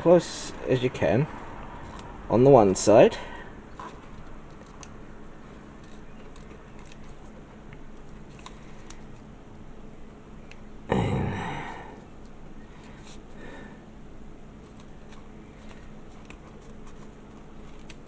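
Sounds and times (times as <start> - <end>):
tape ticks and rustles: 1.6 - 2.2, 3.7 - 9.4, 14.6 - 18.0.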